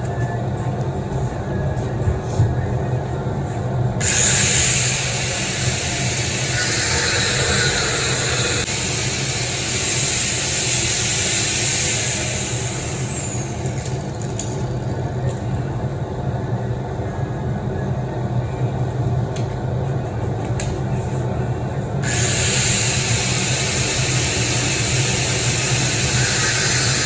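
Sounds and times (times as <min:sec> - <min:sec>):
steady low hum: 0:00.0 - 0:27.0
angle grinder cutting steel: 0:04.0 - 0:14.5, 0:22.0 - 0:27.0.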